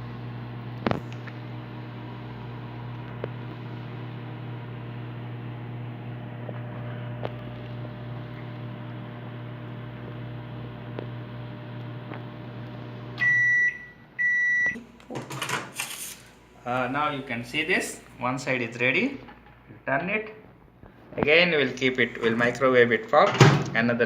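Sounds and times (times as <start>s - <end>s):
microwave oven humming: 0.0s - 18.4s
microwave beeps: 13.1s - 14.8s.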